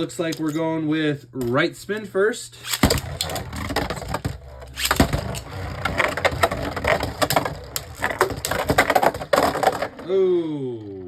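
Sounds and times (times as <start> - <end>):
spinning tops scraping rattle: 2.6 - 10.0.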